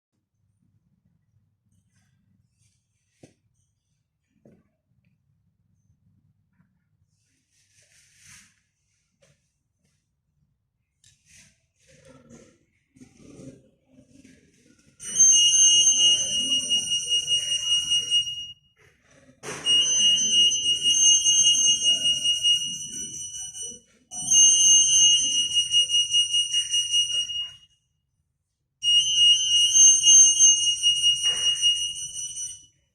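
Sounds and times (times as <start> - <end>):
security alarm beeping: 15.0 - 18.7, 19.4 - 27.7, 28.8 - 32.9.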